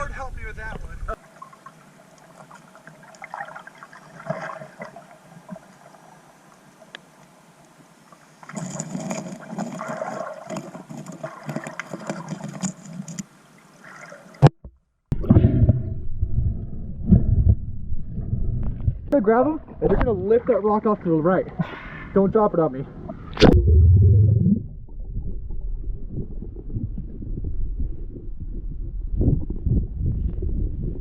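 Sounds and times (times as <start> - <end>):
water gurgling and bubbling: 23.3 - 31.0.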